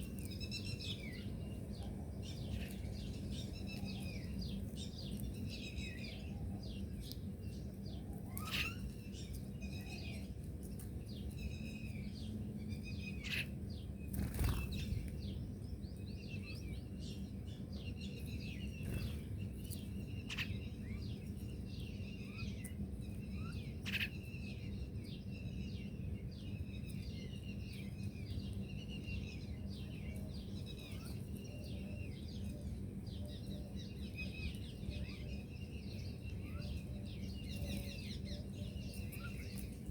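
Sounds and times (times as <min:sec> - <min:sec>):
low background hum: 0:00.0 - 0:39.9
small birds chirping: 0:00.0 - 0:39.9.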